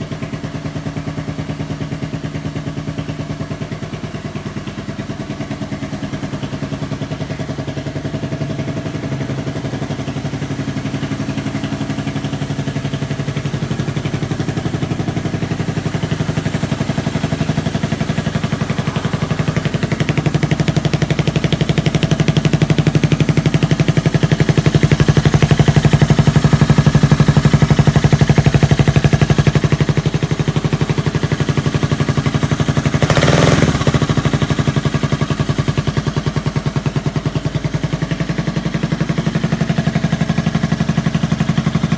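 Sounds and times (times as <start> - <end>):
scooter engine exhaust: 0.0 - 41.9
loud exhaust burst: 14.5 - 21.5.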